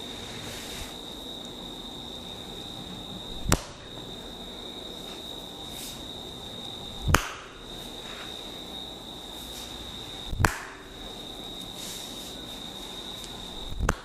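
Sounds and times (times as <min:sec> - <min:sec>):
massage slaps: 0:03.4 - 0:03.8, 0:07.0 - 0:07.6, 0:10.3 - 0:10.9, 0:13.7 - 0:14.0.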